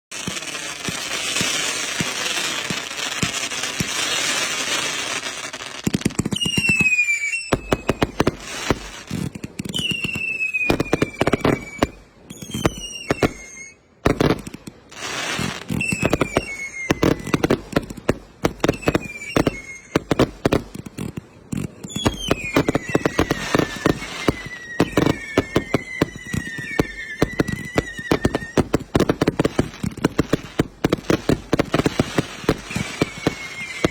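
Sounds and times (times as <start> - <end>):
fireworks cracks and bangs: 0.1 - 33.9
falling whistles: 6.3 - 9.1, 9.7 - 14.0, 15.1 - 17.5, 18.6 - 20.1, 21.8 - 33.9.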